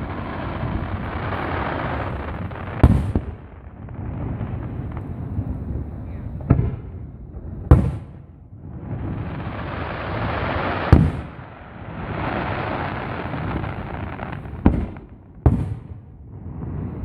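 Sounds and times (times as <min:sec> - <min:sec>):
fireworks booming: 0:00.0 - 0:17.0.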